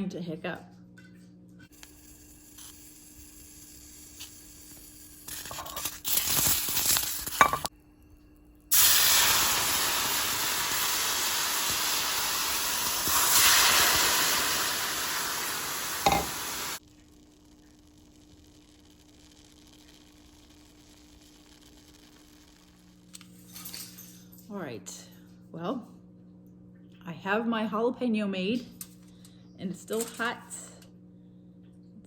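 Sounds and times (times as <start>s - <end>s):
peppers sizzling in a hot pan: 1.7s - 7.7s, 8.7s - 23.0s.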